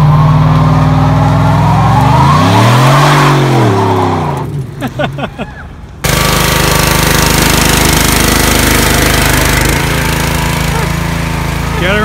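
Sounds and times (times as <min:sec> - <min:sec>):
pump humming: 0:06.0 - 0:11.8
pressure washer spraying: 0:06.1 - 0:12.0.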